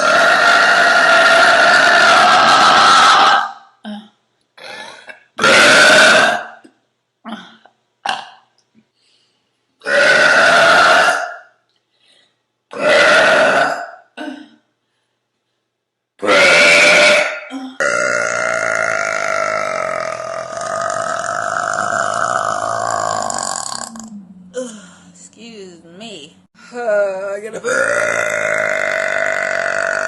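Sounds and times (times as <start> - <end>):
woman burping: 3.8 - 8.5, 12.7 - 14.7, 16.2 - 25.0, 26.8 - 30.0.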